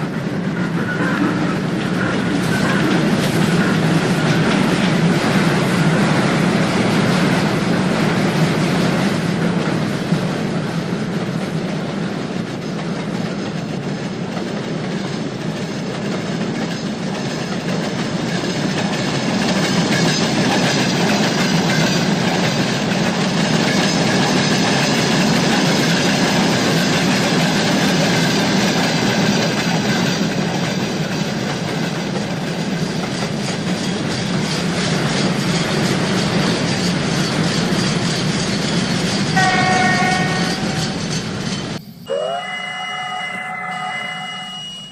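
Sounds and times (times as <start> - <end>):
train wheels clattering on rails: 0.0 - 41.8
train horn blast: 39.4 - 40.8, 42.1 - 44.9.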